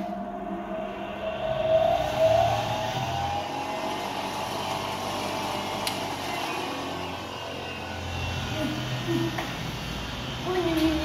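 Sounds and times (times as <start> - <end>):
power saw motor whining: 1.7 - 10.4.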